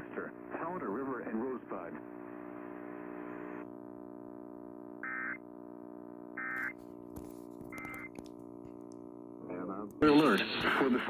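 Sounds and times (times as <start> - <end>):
low electrical hum: 0.0 - 11.0.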